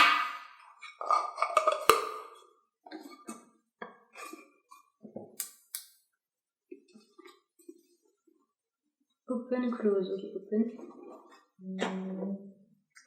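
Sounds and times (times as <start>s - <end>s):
sharp clicks: 5.4s - 6.0s.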